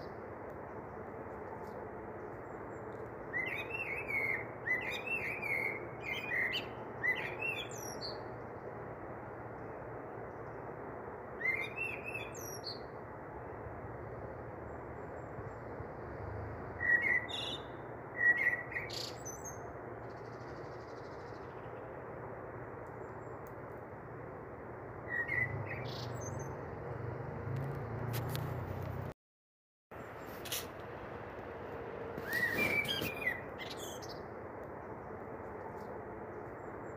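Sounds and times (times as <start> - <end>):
small birds chirping: 32.2 - 34.3.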